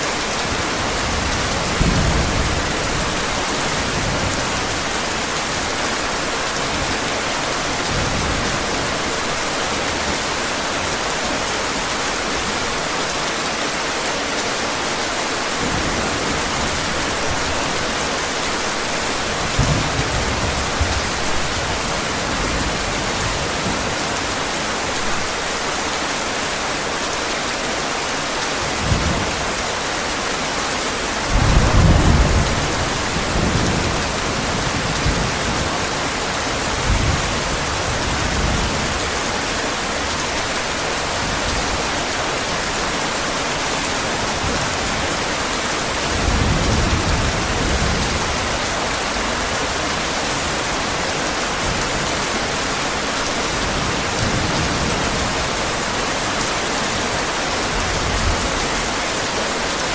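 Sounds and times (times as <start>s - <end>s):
heavy rain: 0.0s - 59.9s
thunder rumbles: 31.3s - 36.0s.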